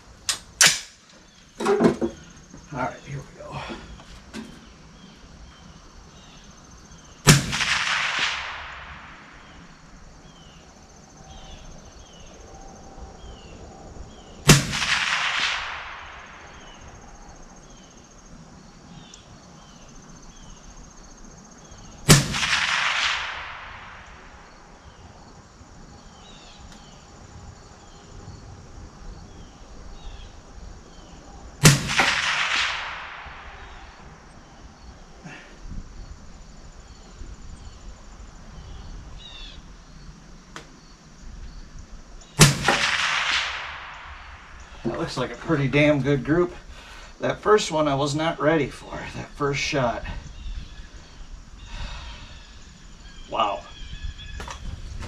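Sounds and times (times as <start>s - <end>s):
rolling echo: 0.0s - 35.6s, 36.2s - 47.0s
rifle shots: 0.3s - 1.0s, 7.2s - 9.9s, 14.4s - 17.3s, 22.0s - 25.0s, 31.6s - 34.2s, 42.4s - 45.4s.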